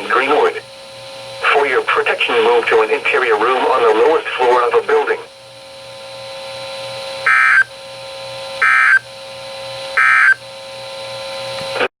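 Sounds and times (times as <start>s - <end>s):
radio hum and hiss: 0.0s - 7.8s, 8.5s - 9.2s, 9.9s - 11.9s
shrill digital data bursts: 7.3s - 7.7s, 10.0s - 10.4s.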